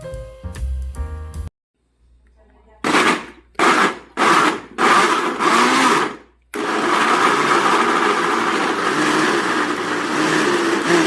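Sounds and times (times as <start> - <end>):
blender running: 2.8 - 11.0.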